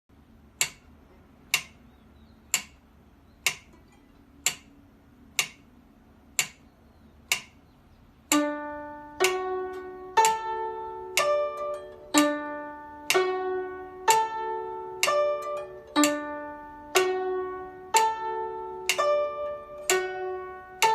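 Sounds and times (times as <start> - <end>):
metronome ticking: 0.1 - 20.9
guzheng plucking a broken chord: 8.3 - 20.9.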